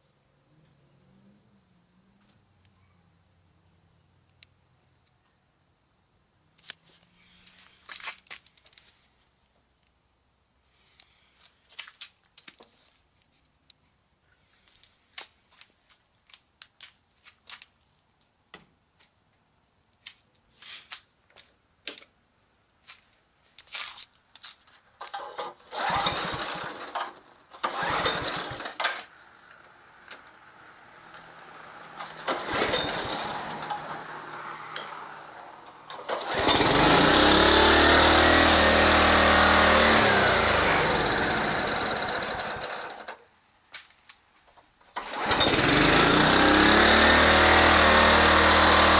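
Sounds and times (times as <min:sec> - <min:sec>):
clicks and rattles: 0:07.4 - 0:09.0
pull-cord pulls: 0:25.0 - 0:29.1, 0:31.9 - 0:35.1
lawn mower engine running: 0:25.0 - 0:43.2, 0:45.0 - 0:48.9.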